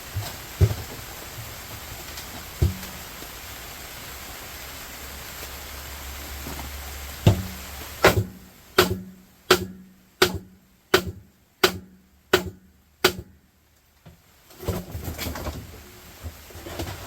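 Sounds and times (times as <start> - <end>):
clattering and rustling: 14.1 - 17.0.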